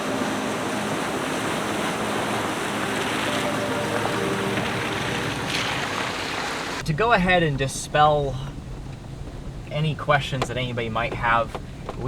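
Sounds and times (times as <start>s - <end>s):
faint sustained tones: 0.0s - 6.2s
creek water flowing: 0.0s - 6.9s.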